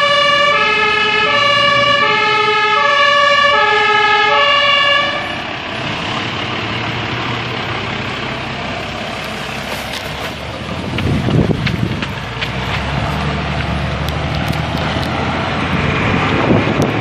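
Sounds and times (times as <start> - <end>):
two-tone fire engine siren: 0.0 - 7.5
vehicle engine and tyres: 0.0 - 17.0.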